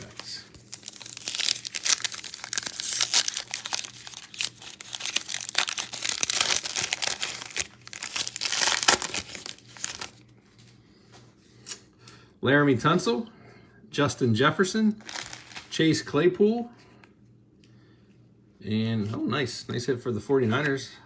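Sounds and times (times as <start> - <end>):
cards being handled: 0.0 - 10.2, 15.0 - 15.8
wrapper crinkling and tearing: 0.0 - 10.2, 15.0 - 15.8.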